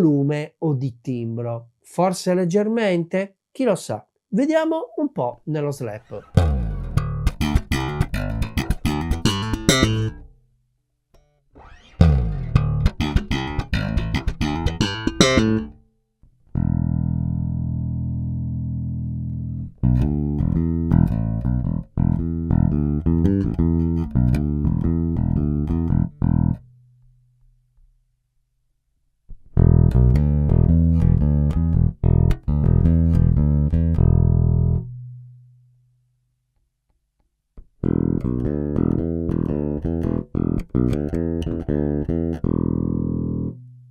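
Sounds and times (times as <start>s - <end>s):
slap bass guitar: 6.0s - 10.3s, 11.2s - 27.0s, 29.3s - 35.7s, 37.6s - 43.9s.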